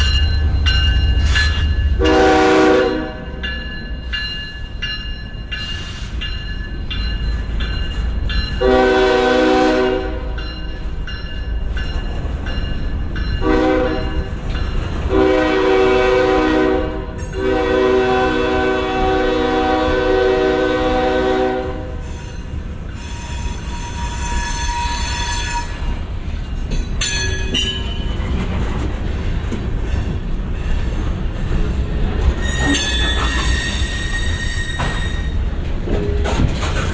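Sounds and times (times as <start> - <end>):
locomotive air horn blasts: 2.0 - 3.3, 8.6 - 10.4, 13.4 - 14.3, 15.1 - 22.0.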